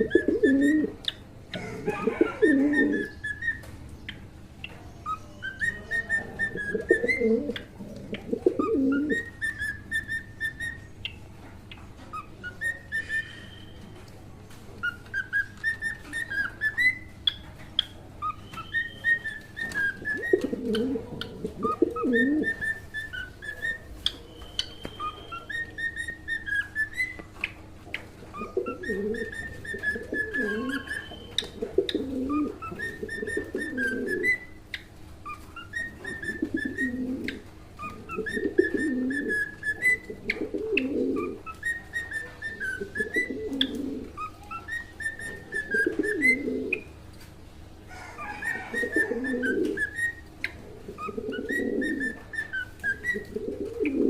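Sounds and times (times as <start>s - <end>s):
low bird calls: 14.8s - 47.0s
cockatiel whistling: 18.2s - 20.5s, 21.7s - 27.3s, 28.4s - 34.5s, 35.2s - 40.4s, 41.2s - 46.8s.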